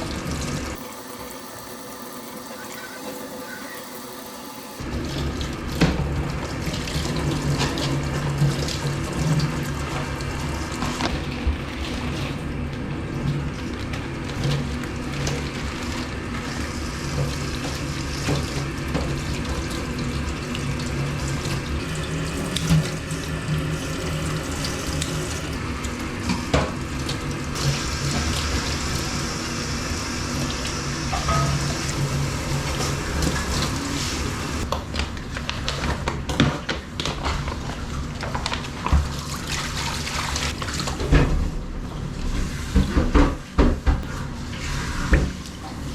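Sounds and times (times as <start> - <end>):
tap water running into sink: 0.1 - 12.4, 13.2 - 34.8.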